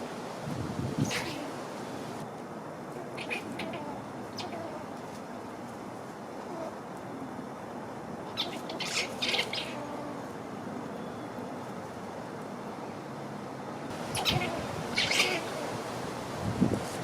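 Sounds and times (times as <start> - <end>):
squirrel chattering alarm calls: 3.2 - 4.8, 8.3 - 9.9, 13.9 - 15.8.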